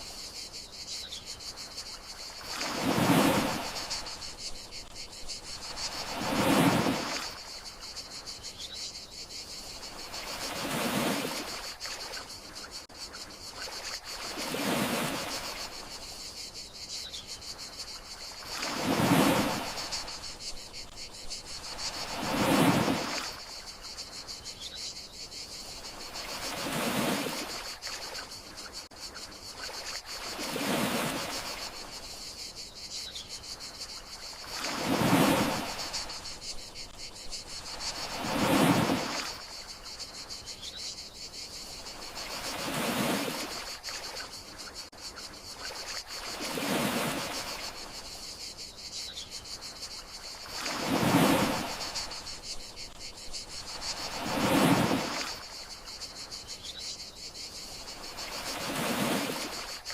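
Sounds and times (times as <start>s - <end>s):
crickets chirping: 0.0s - 59.9s
sea waves washing onto shore: 2.2s - 4.9s, 5.5s - 7.5s, 18.4s - 20.9s, 21.7s - 23.5s, 37.6s - 39.6s, 50.4s - 52.5s, 53.7s - 55.7s, 58.1s - 59.9s.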